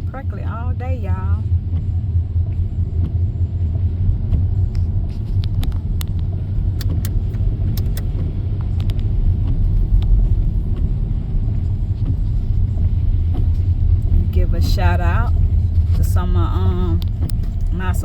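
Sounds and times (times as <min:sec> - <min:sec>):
car driving on wet road rumble: 0:00.0 - 0:18.0
sharp ticks: 0:06.8 - 0:08.2.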